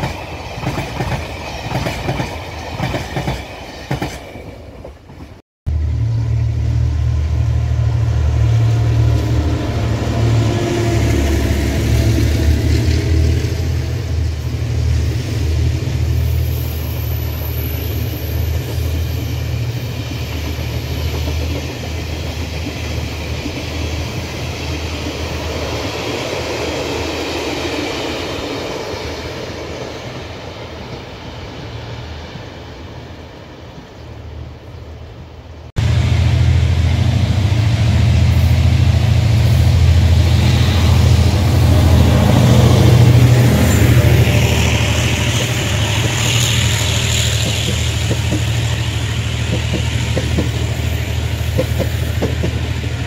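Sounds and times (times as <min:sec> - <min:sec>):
train wheels clacking over rails: 0:00.0 - 0:05.4, 0:17.2 - 0:31.1, 0:38.1 - 0:53.0
diesel locomotive engine drone: 0:05.7 - 0:53.0.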